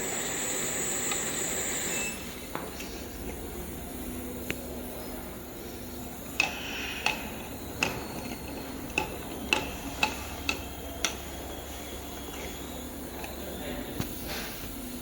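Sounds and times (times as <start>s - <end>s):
capping machine humming: 0.0s - 5.3s.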